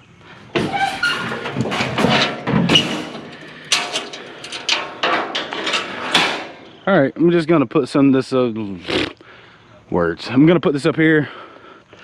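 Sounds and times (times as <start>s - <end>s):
scrap metal clanking: 0.4s - 6.8s.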